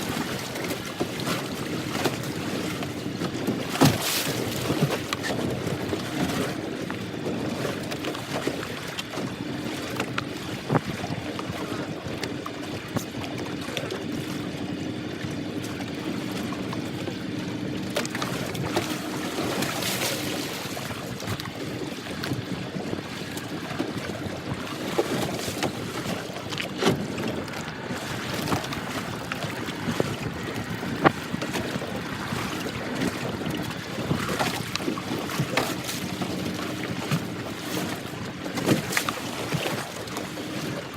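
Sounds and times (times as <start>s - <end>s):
boat engine hum: 0.0s - 40.9s
water washing against hull: 0.0s - 40.9s
wind on microphone: 0.0s - 40.9s.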